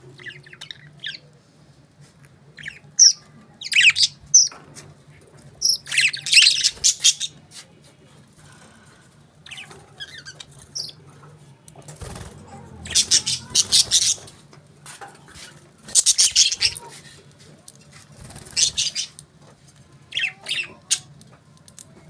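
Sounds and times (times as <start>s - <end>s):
budgerigars chirping and squawking: 2.6s - 4.6s, 5.6s - 7.4s, 9.4s - 11.0s, 12.1s - 14.4s, 15.8s - 17.0s, 18.2s - 19.2s, 20.1s - 21.1s.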